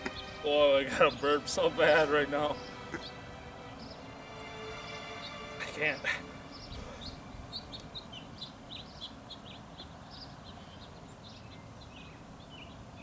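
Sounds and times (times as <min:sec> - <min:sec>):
birds chirping: 0:00.0 - 0:13.0
low steady rumble: 0:06.3 - 0:09.5.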